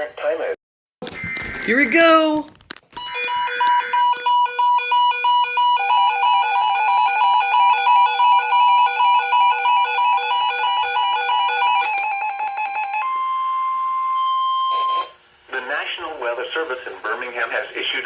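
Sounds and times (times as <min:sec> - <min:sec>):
steady warning alarm tone: 0:03.0 - 0:15.2.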